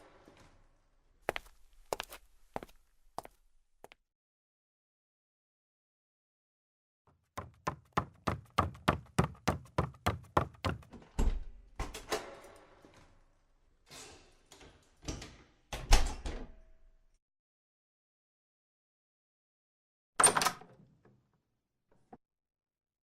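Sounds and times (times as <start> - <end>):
rapid knocking on door: 7.4 - 10.9
door opening thud and clunks: 10.7 - 12.6.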